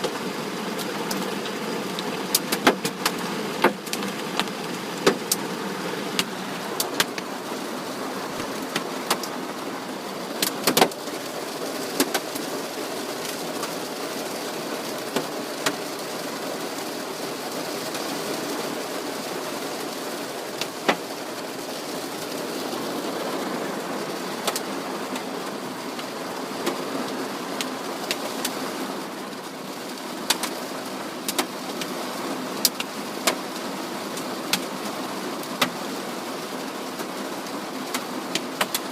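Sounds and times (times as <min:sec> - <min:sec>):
hail pattering on vehicle: 0:00.0 - 0:07.6, 0:17.6 - 0:36.0
hailstones knocking on bodywork: 0:00.8 - 0:05.6.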